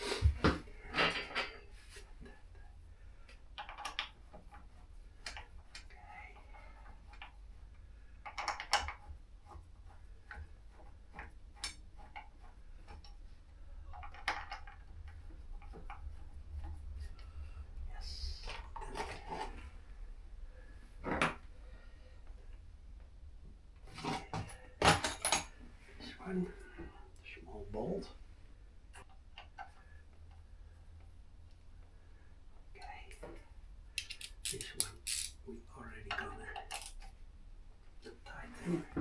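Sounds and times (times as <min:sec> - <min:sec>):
metal tools clinking: 0:34.0 - 0:35.3, 0:36.7 - 0:36.9.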